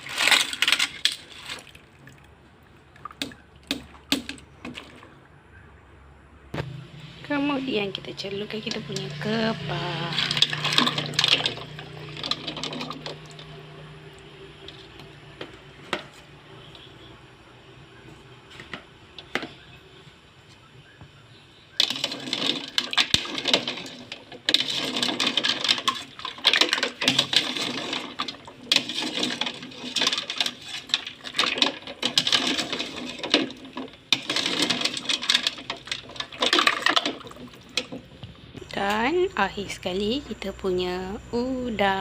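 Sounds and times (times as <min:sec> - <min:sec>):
clam shells clattering: 0:00.0 - 0:01.9, 0:09.9 - 0:13.8, 0:21.8 - 0:38.1.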